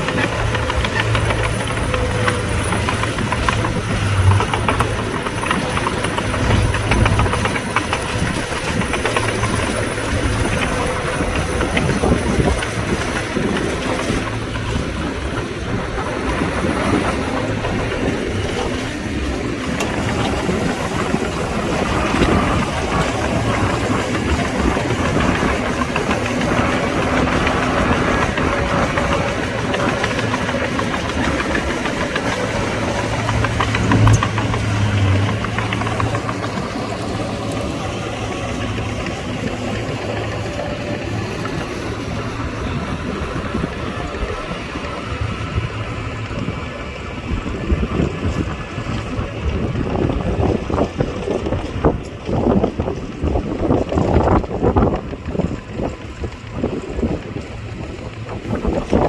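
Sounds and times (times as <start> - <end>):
heavy machinery diesel engines: 0.0 - 59.0.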